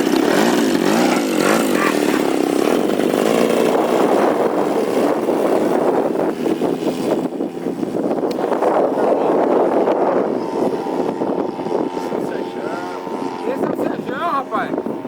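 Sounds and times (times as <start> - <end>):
model airplane engine running: 0.0 - 15.0.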